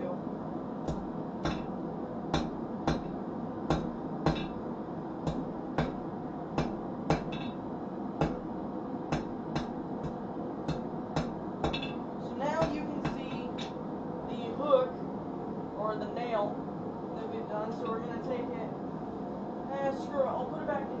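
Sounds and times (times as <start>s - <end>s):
steady background hum: 0.0s - 21.0s
hammer striking hot steel: 0.9s - 4.6s, 5.2s - 6.0s, 6.6s - 7.6s, 8.2s - 8.5s, 9.1s - 12.0s, 12.6s - 13.8s.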